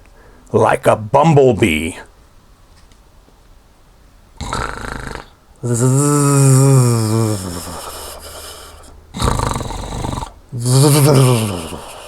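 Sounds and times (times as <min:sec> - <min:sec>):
cartoon snore: 0:04.4 - 0:12.0.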